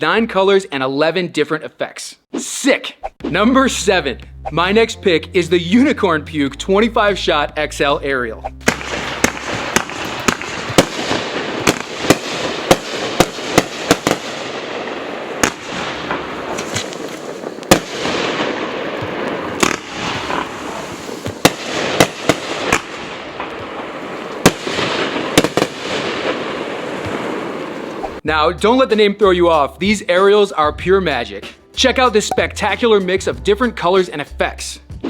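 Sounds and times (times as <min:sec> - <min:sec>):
fireworks bangs: 0:08.6 - 0:28.2
fireworks hiss: 0:19.6 - 0:23.0.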